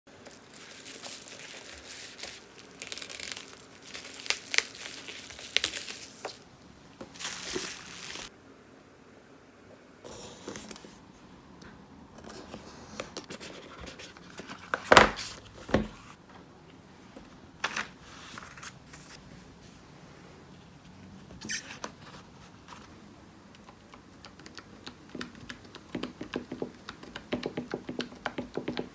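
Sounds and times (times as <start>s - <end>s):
plastic packaging crinkling: 0.1s - 6.5s, 7.1s - 8.3s.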